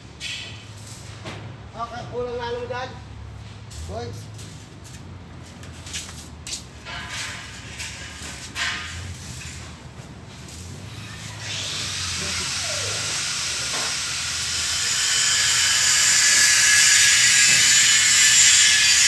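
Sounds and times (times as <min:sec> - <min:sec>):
electric arc welding hiss: 0:10.5 - 0:19.0.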